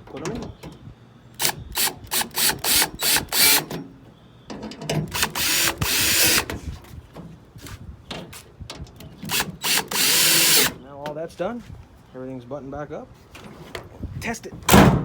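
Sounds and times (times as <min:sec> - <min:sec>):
cordless power drill bursts: 0:01.4 - 0:03.8, 0:05.1 - 0:06.5, 0:09.2 - 0:10.8.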